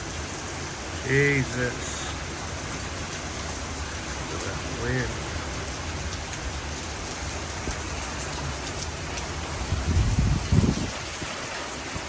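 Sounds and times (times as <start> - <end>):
heavy rain pouring: 0.0 - 12.0
wind gusts hitting microphone: 8.5 - 12.0.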